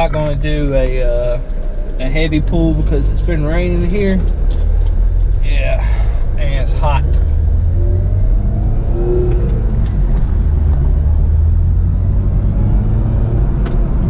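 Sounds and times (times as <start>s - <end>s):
road and engine rumble in car: 0.0s - 14.0s
supercharger whine: 6.3s - 14.0s.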